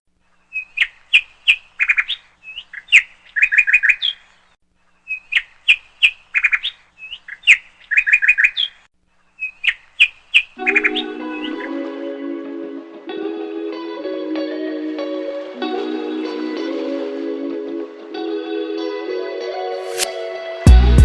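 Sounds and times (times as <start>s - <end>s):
bird chirps and trills: 0.4s - 4.4s, 5.0s - 8.8s, 9.4s - 11.8s
music: 10.6s - 21.0s.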